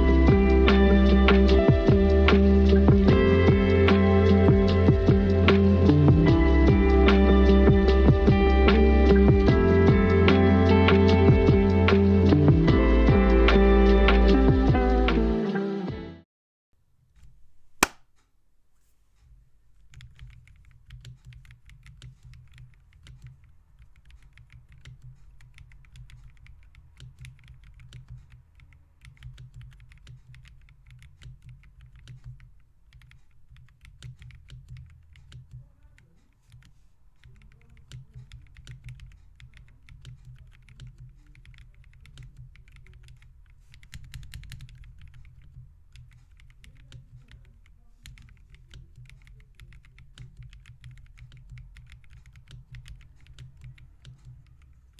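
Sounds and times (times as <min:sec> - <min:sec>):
mechanical keyboard typing: 0:19.8 - 0:35.7, 0:36.5 - 0:54.9.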